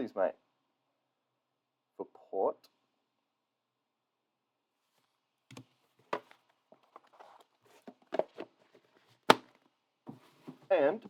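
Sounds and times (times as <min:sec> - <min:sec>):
cards clicking and rustling: 0:09.3 - 0:09.5.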